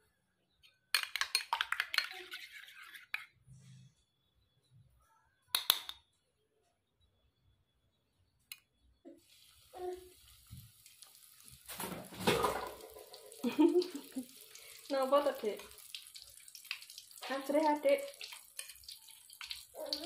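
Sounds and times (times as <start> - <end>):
utensil clinking on kitchenware: 0.9 - 3.3
tap water running into sink: 9.4 - 20.0.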